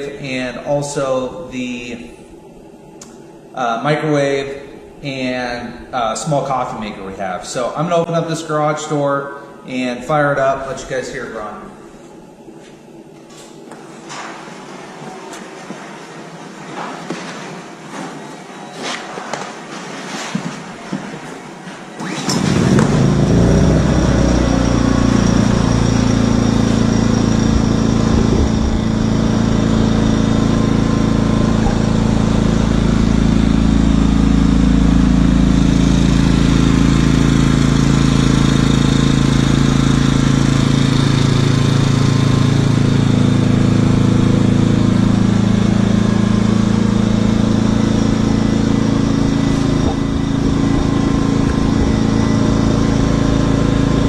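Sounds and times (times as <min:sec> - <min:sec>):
generator engine running: 0:21.9 - 0:54.0.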